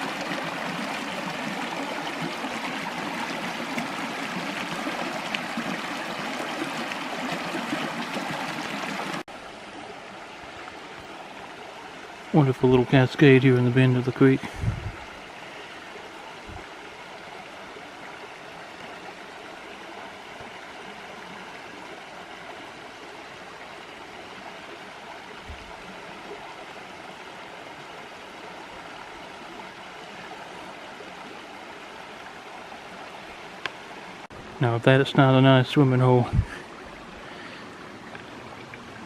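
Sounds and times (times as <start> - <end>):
water running and splashing: 0.0 - 9.4.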